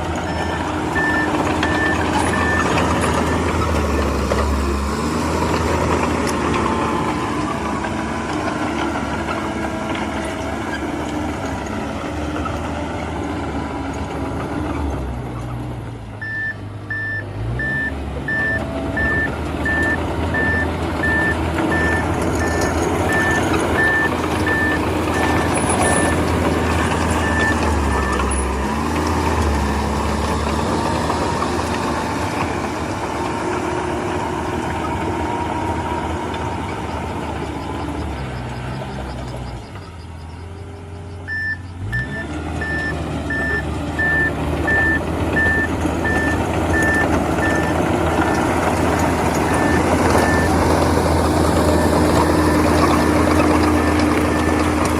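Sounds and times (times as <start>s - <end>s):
heavy machinery diesel engine: 0.0s - 54.9s
reversing alarm beeping: 0.3s - 3.5s, 16.2s - 28.6s, 40.9s - 48.5s, 49.4s - 50.7s.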